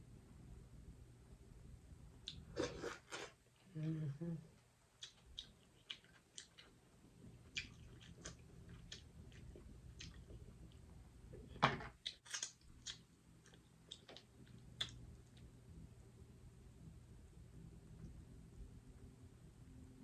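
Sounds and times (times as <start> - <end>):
chewing and mouth smacks: 2.2 - 3.3, 5.0 - 6.8, 7.4 - 15.5.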